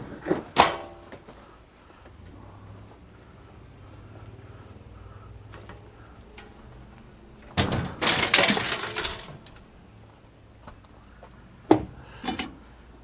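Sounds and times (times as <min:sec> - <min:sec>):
scrap metal crashing onto pile: 0:07.6 - 0:09.5.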